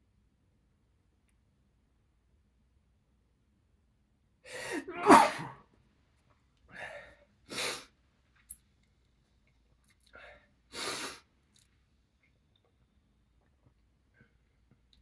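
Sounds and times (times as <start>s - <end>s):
man sneezing: 4.5s - 5.6s
man breathing and sniffing: 10.2s - 11.2s.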